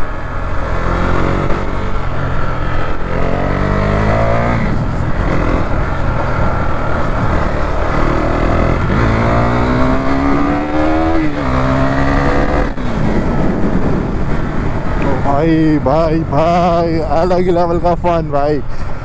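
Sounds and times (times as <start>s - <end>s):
motorcycle engine accelerating: 0.0s - 19.0s.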